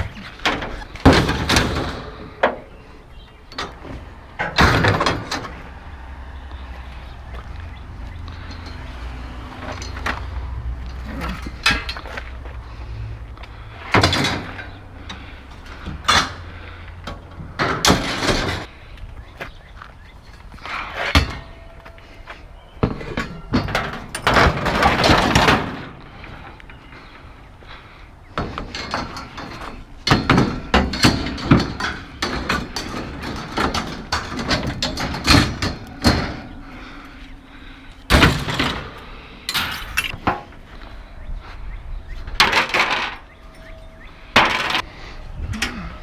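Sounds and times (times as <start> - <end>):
scrap metal clanking: 20.6 - 27.0, 28.4 - 40.6.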